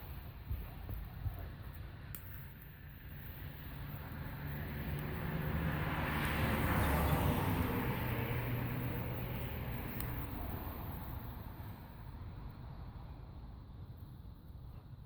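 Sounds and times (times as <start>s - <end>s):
vehicle passing by: 3.4s - 11.8s.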